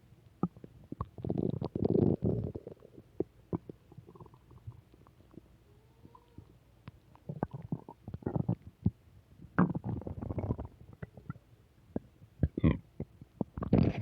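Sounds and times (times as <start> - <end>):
stomach growling: 0.4 - 6.6, 7.2 - 11.4, 12.0 - 14.0.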